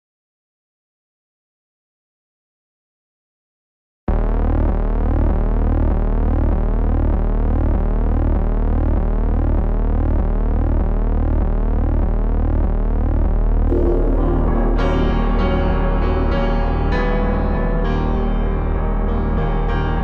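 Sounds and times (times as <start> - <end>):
low hum: 4.1 - 20.0
synthesizer tone sweeping: 13.7 - 19.8.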